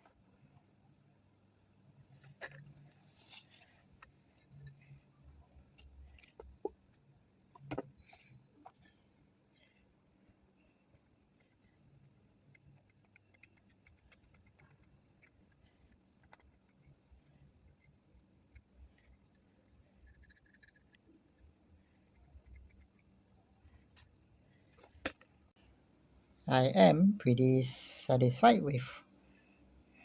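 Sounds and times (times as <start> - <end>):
small clicks and scratches on metal: 5.8 - 6.8, 8.0 - 25.3.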